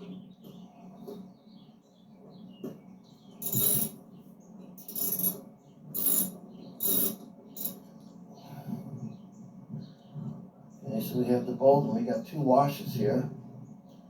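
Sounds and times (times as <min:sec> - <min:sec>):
socket ratchet clicking: 0:03.4 - 0:03.9, 0:04.8 - 0:05.4, 0:06.0 - 0:07.8.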